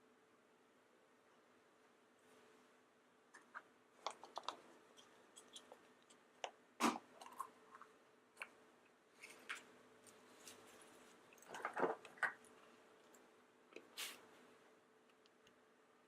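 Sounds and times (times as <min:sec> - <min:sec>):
plastic egg clicks and crinkles: 0:03.3 - 0:08.6.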